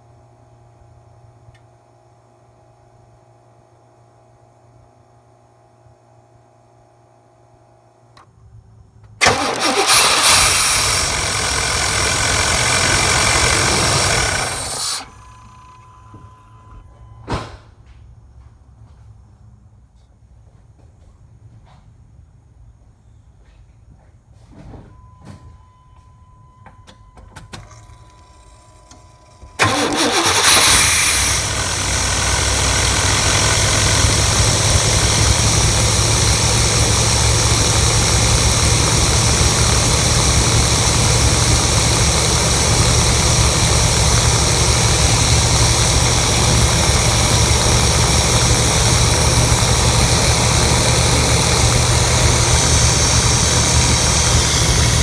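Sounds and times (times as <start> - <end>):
pickup truck engine starting and idling: 9.2 - 16.5, 27.5 - 55.0.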